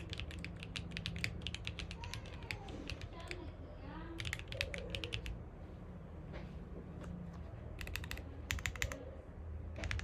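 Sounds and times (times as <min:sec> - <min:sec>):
mechanical keyboard typing: 0:00.0 - 0:05.4, 0:07.7 - 0:09.0, 0:09.7 - 0:10.0.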